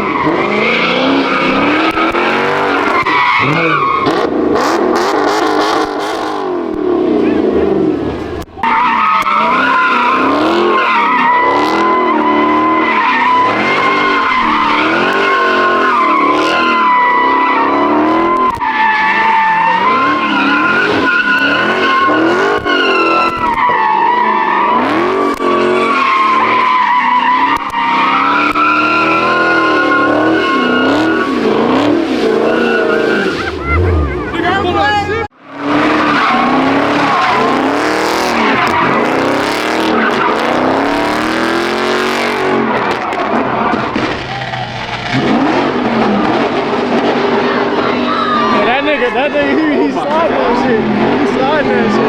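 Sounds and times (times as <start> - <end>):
car engine revving: 0.0 - 52.0
tyres squealing: 8.2 - 35.3.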